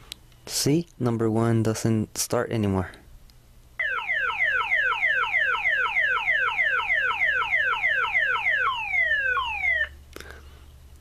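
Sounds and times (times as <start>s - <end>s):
car alarm siren chirping: 3.8s - 10.0s.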